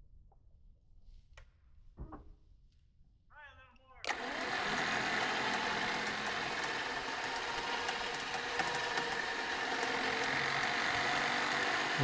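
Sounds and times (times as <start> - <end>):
engine running steadily: 4.1 - 12.0.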